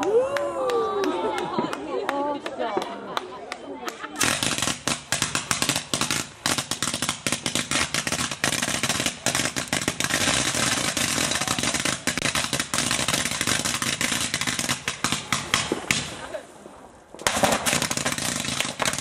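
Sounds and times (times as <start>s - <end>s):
fireworks popping and crackling: 4.2s - 19.0s.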